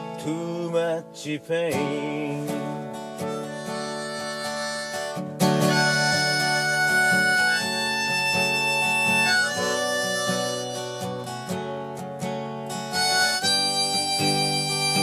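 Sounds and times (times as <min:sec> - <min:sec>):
acoustic guitar strumming: 0:00.0 - 0:15.0
harmonica playing: 0:02.9 - 0:12.0, 0:12.6 - 0:15.0.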